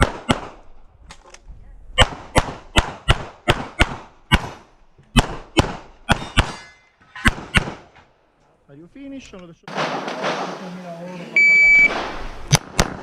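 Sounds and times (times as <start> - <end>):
pistol shots: 0.0 - 0.6, 2.0 - 6.5.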